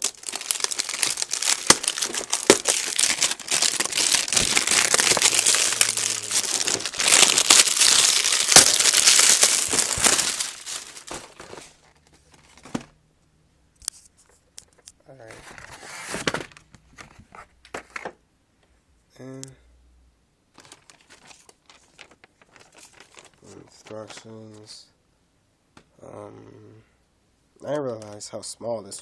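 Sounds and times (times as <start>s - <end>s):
packaging crinkling and tearing: 0.0s - 12.9s, 20.5s - 24.4s.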